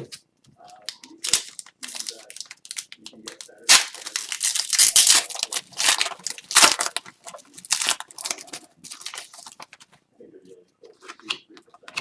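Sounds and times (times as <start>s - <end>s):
cards being shuffled: 0.0s - 10.0s
foil wrappers crinkling and tearing: 0.7s - 9.9s.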